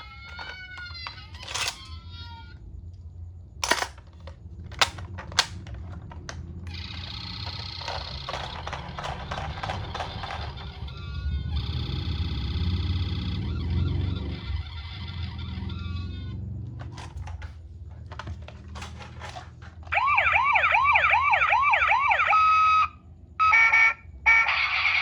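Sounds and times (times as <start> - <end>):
plastic toy clicks and knocks: 0.0 - 2.0, 3.6 - 10.8, 16.8 - 20.0
electronic toy siren: 0.0 - 2.5, 6.7 - 16.4, 19.9 - 25.0.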